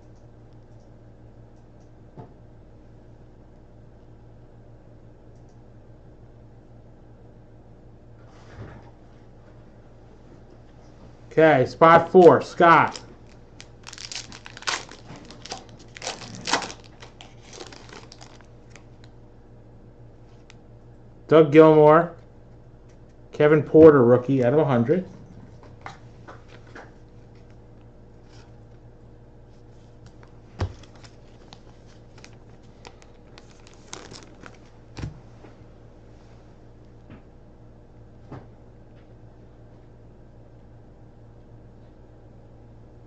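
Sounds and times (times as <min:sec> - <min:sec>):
card pack wrapper tearing: 0:12.5 - 0:19.1, 0:30.6 - 0:34.8.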